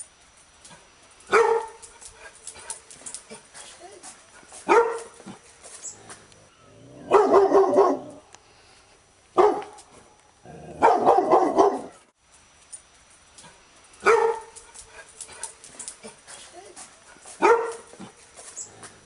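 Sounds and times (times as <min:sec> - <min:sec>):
dog barking: 0:01.3 - 0:01.8, 0:04.6 - 0:05.4, 0:07.1 - 0:08.2, 0:09.4 - 0:09.8, 0:10.8 - 0:12.0, 0:14.0 - 0:14.6, 0:17.3 - 0:18.1.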